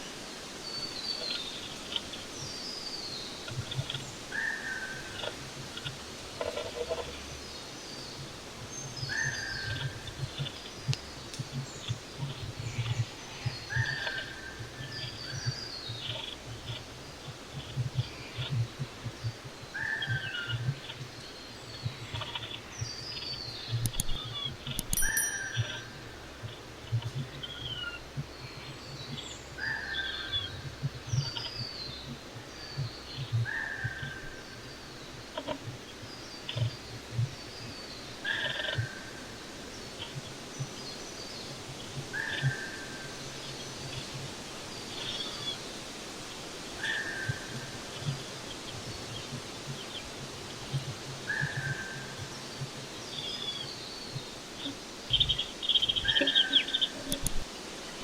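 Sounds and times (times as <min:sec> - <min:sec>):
background hiss: 0:00.0 - 0:58.0
small birds chirping: 0:00.6 - 0:58.0
sharp clicks: 0:23.8 - 0:25.7
bird call: 0:24.0 - 0:25.9
high chirps: 0:24.9 - 0:25.8.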